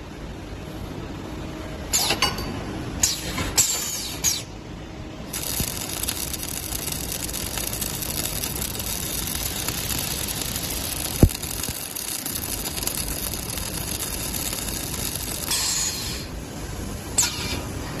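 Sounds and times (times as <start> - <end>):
welding machine hum: 5.2 - 17.2
crackling welding hiss: 5.3 - 17.9.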